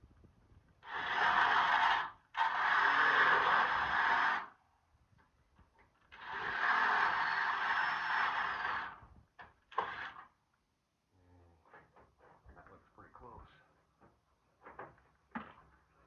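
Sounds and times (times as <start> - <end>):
power tool motor running: 0.8 - 4.5, 6.2 - 9.0.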